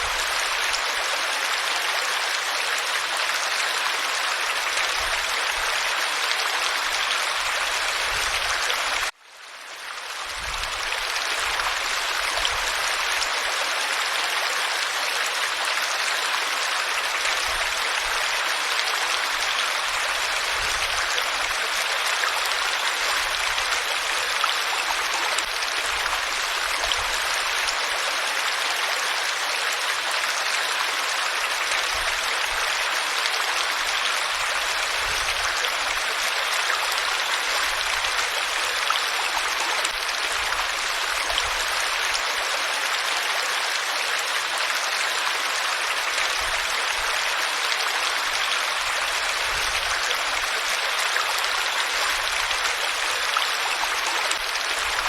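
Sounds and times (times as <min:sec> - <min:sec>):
water flowing: 0:00.0 - 0:09.2, 0:09.8 - 0:55.0.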